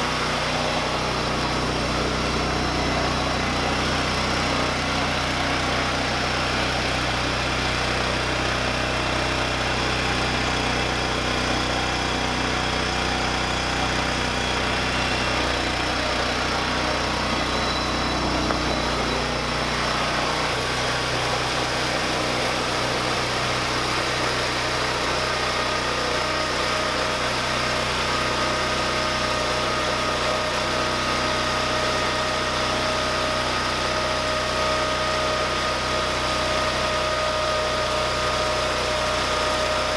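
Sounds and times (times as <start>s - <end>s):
lawn tractor engine running: 0.0s - 39.9s
thin steady whine: 12.1s - 32.3s.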